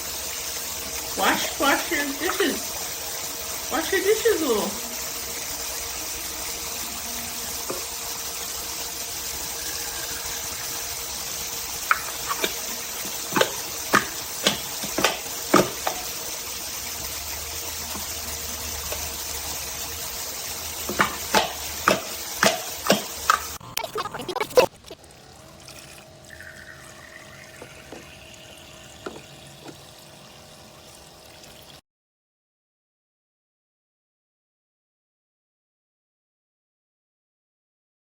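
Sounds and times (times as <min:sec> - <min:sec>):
small electric pump running: 0:00.0 - 0:31.8
water stream from faucet: 0:00.0 - 0:31.8
play dishes knocking and clinking: 0:27.3 - 0:29.8.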